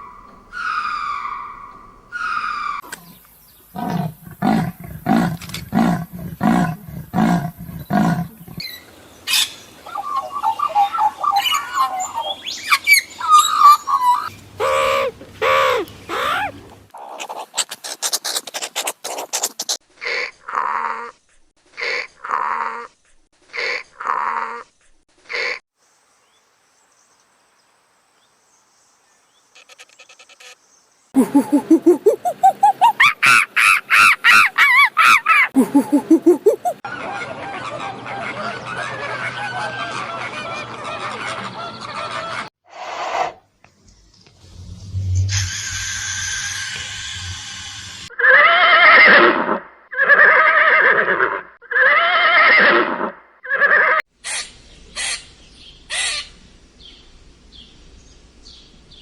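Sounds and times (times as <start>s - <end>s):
large animal deep calls: 0.0s - 8.7s
birds chirping: 0.0s - 17.4s, 28.2s - 42.4s, 54.2s - 59.0s
rapid pulsed animal calls: 44.0s - 48.1s.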